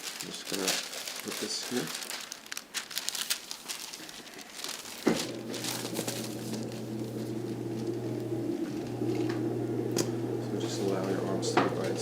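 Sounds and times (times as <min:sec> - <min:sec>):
crinkling and rustling: 0:00.0 - 0:12.0
low electric hum: 0:04.6 - 0:12.0.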